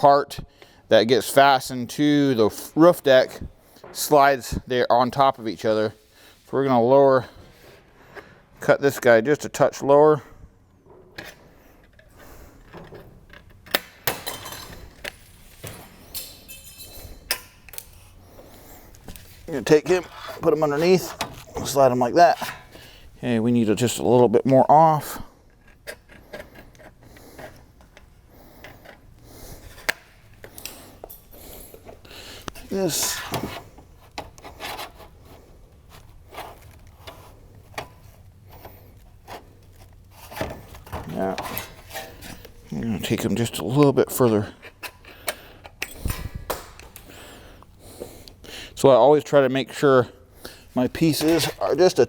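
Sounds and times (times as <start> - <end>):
thin metal rattling and ringing: 16.1 - 17.3.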